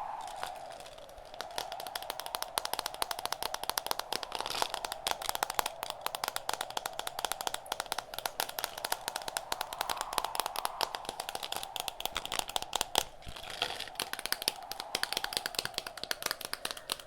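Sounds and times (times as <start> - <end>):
wind: 0.0 - 17.0.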